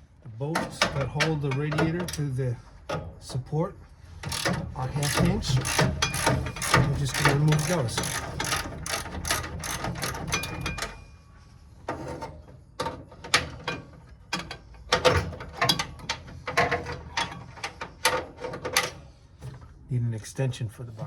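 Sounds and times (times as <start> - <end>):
socket ratchet clicking: 4.2 - 10.6.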